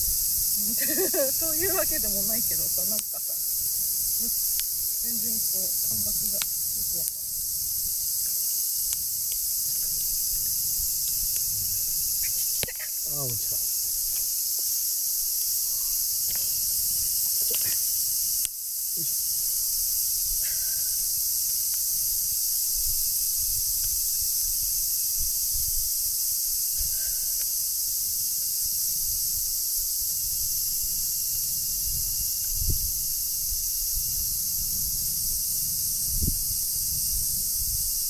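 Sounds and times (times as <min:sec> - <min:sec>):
wind rumbling on microphone: 0:00.0 - 0:12.6, 0:19.7 - 0:27.2, 0:27.9 - 0:38.0
crickets chirring: 0:00.0 - 0:38.0.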